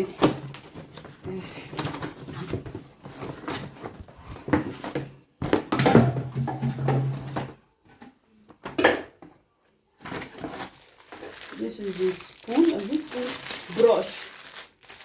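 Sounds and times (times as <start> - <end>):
plastic parts clattering: 10.1 - 15.0.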